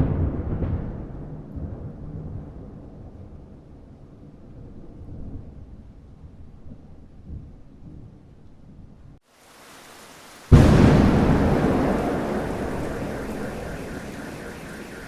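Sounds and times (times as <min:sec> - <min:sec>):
heavy rain hiss: 0:09.3 - 0:15.0
distant thunder rumbling: 0:09.6 - 0:15.0
loud thunderclap: 0:10.4 - 0:15.0.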